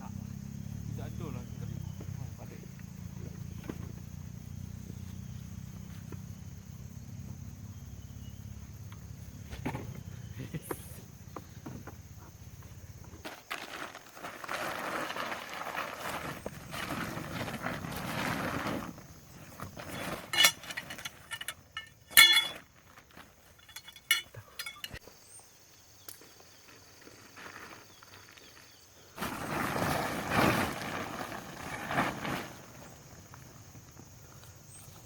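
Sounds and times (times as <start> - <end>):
rustling and scuffing: 13.1 - 25.0, 26.5 - 34.0
sharp ringing clinks: 20.3 - 22.6, 23.6 - 25.0.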